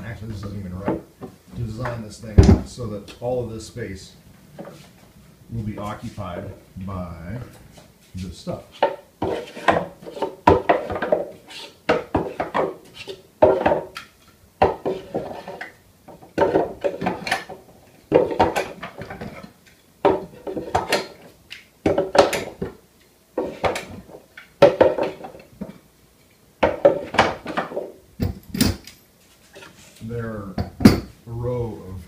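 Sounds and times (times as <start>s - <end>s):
clamps clattering on wooden shelf: 8.8s - 22.8s, 23.4s - 25.8s, 26.6s - 29.0s.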